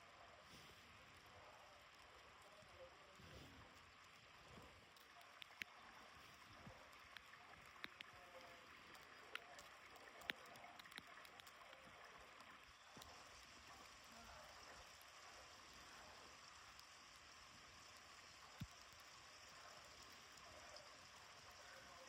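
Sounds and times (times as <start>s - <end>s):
soft clicks: 5.0s - 5.9s, 6.9s - 13.1s.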